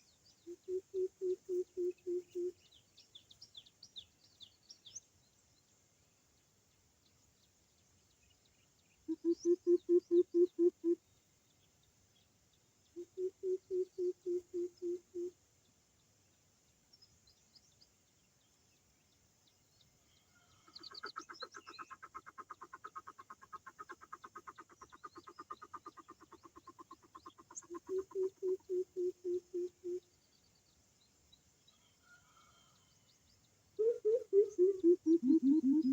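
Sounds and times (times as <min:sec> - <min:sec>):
small birds chirping: 0:00.0 - 0:35.9
coucal hooting: 0:27.7 - 0:30.0, 0:33.8 - 0:35.9.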